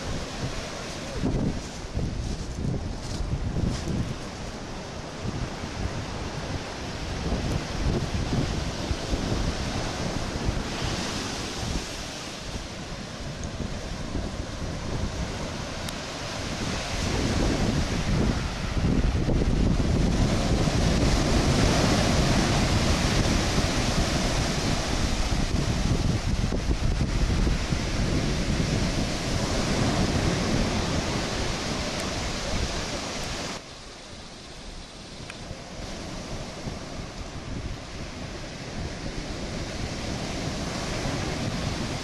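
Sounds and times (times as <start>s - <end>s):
wind buffeting microphone: 0.0s - 33.6s, 34.6s - 42.0s.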